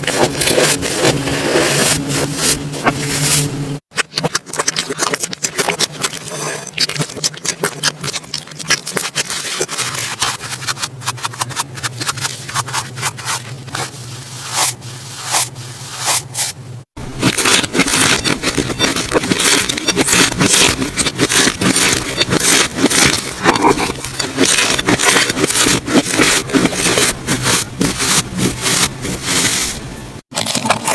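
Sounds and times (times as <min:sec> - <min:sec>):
low steady hum: 0:00.0 - 0:03.8.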